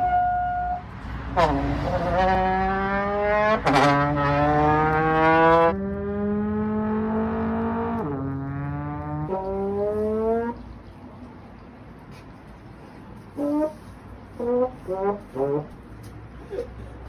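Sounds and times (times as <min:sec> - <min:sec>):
brassy horn-like notes: 0:00.0 - 0:10.6, 0:14.4 - 0:15.9.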